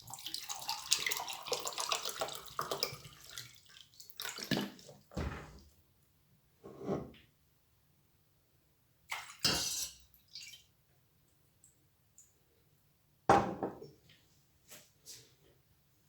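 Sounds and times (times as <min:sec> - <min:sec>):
kitchenware knocking and clinking: 0:13.3 - 0:13.8.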